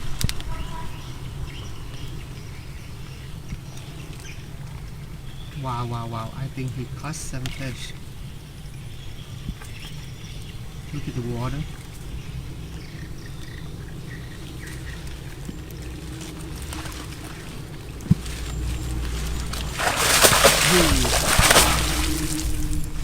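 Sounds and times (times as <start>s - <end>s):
low steady hum: 0.0s - 23.0s
water splashing and pouring: 15.2s - 23.0s.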